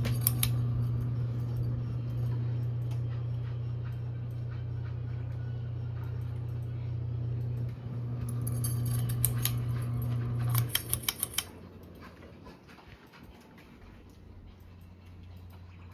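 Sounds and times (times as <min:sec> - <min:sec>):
ceiling fan motor humming: 0:00.0 - 0:15.9
clicks and rattles: 0:08.3 - 0:11.6.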